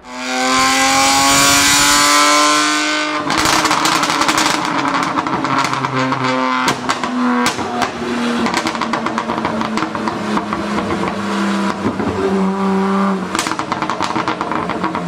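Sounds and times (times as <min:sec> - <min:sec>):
car engine revving: 0:00.0 - 0:15.0
exhaust pops and crackles: 0:03.2 - 0:12.6, 0:13.2 - 0:15.0.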